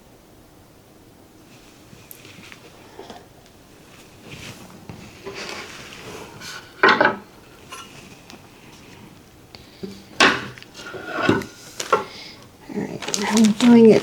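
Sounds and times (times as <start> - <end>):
packaging rustling: 10.5 - 14.0.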